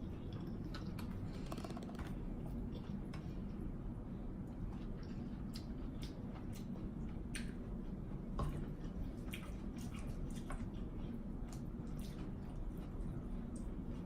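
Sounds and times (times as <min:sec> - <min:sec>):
steady low hum: 0:00.0 - 0:14.0
wet chewing and lip smacking: 0:04.7 - 0:13.8.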